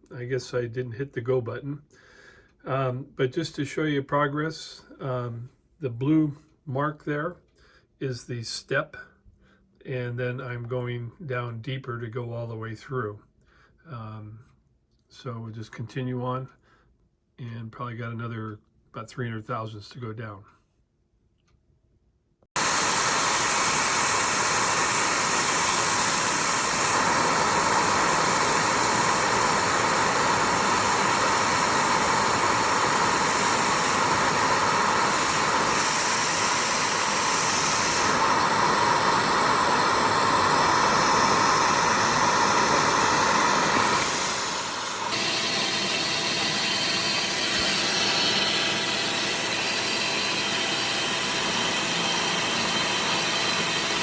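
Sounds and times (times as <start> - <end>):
milling machine cutting metal: 22.6 - 54.0.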